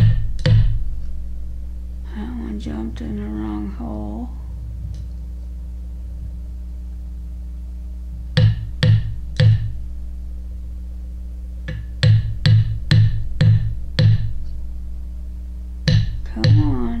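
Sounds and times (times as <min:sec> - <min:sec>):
sharp knocks: 0:00.0 - 0:00.9, 0:08.4 - 0:09.8, 0:11.7 - 0:14.4, 0:15.9 - 0:16.9
steady low hum: 0:00.0 - 0:17.0.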